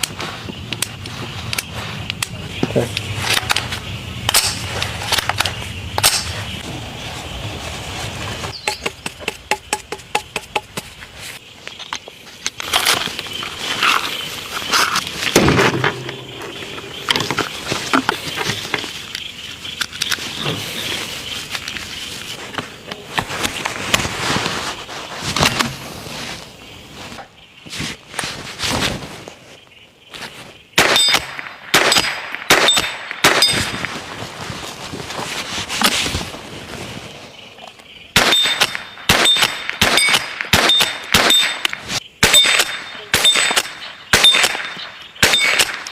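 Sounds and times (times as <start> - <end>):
rifle shots: 30.8 - 33.8, 38.2 - 45.9.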